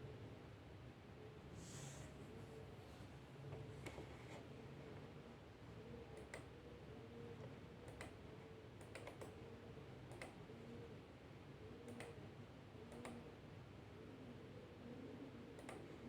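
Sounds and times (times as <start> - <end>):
faint irregular clicks: 6.1 - 6.5, 7.4 - 8.2, 8.8 - 9.4, 10.0 - 10.5, 11.8 - 12.2, 12.9 - 13.2, 15.5 - 15.9.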